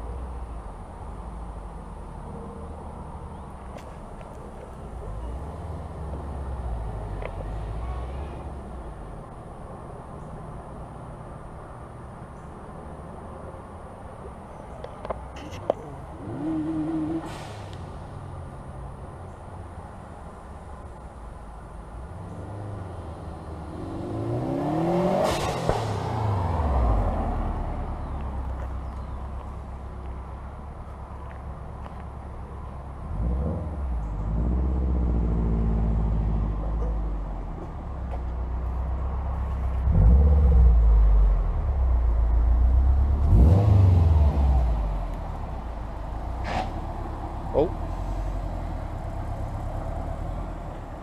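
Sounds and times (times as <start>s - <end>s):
car engine revving: 22.4s - 28.6s, 39.7s - 51.0s.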